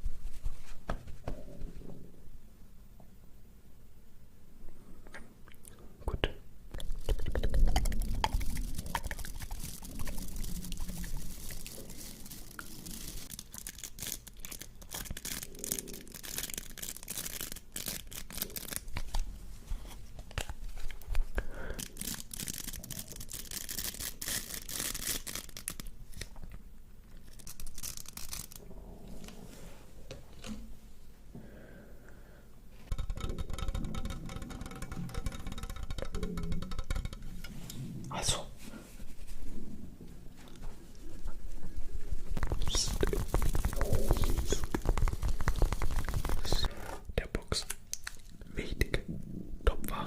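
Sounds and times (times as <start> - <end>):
crinkling and tearing: 6.8 - 28.7, 42.3 - 48.4.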